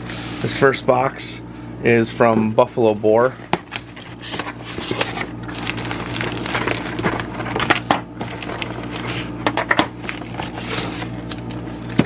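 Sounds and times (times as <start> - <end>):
steady low hum: 0.0 - 12.0
cardboard rustling: 2.9 - 12.0.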